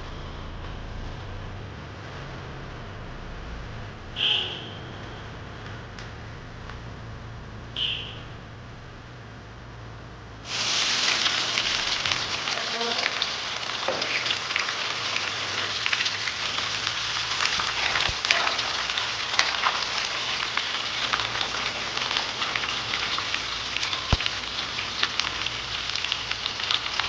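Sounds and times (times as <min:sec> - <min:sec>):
food sizzling and crackling: 0:10.4 - 0:27.0.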